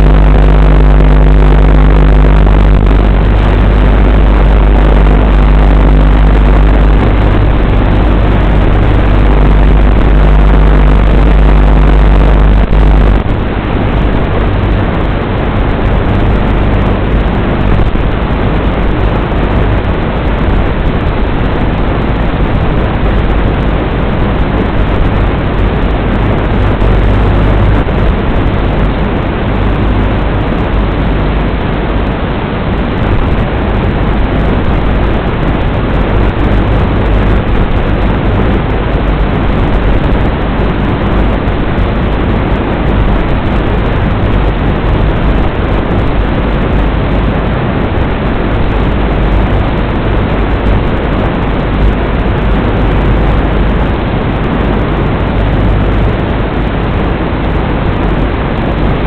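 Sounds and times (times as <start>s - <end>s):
loud steady rushing noise: 0.0s - 59.0s.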